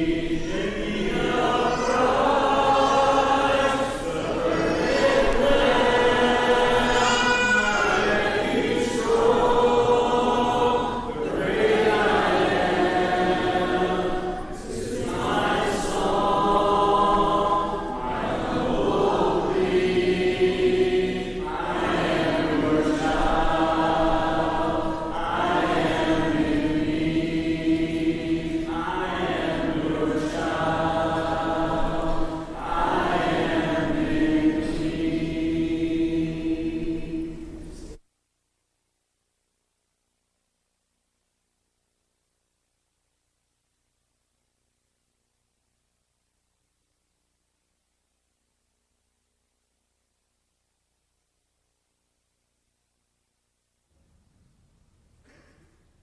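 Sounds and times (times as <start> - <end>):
congregation singing a hymn: 0.0 - 38.0.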